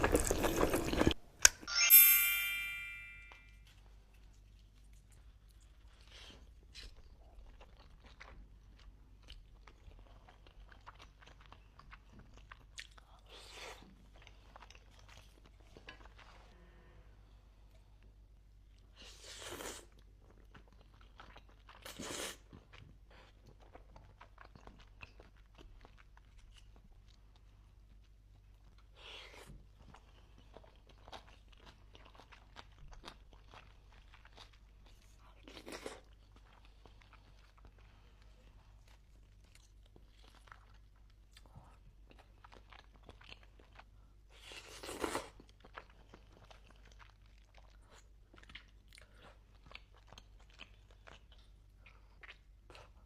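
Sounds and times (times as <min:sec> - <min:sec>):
person chewing: 0:00.0 - 0:01.2, 0:03.6 - 0:16.4, 0:28.7 - 0:53.0
slurping or biting: 0:00.0 - 0:01.2.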